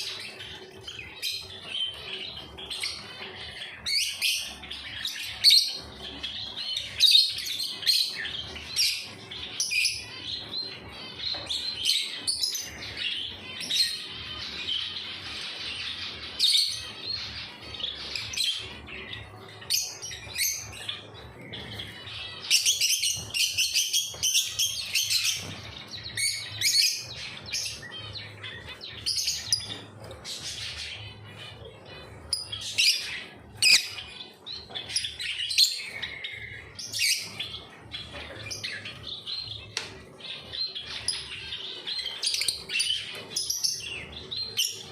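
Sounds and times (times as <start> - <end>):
birds chirping: 0.0 - 44.9.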